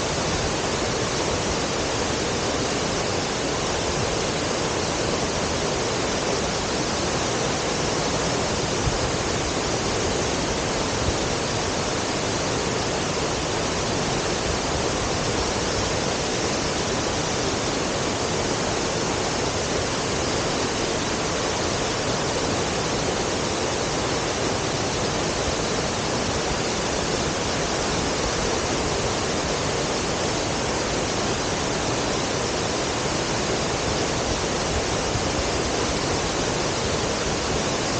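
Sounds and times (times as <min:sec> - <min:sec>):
waterfall crashing: 0:00.0 - 0:37.9.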